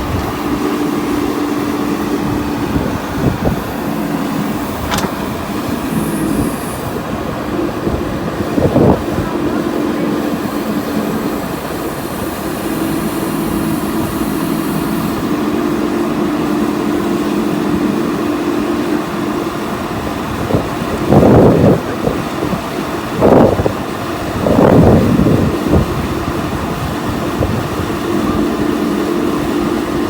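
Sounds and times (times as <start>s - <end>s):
diesel engine running: 0.0s - 30.0s
short loud knock: 4.8s - 5.2s.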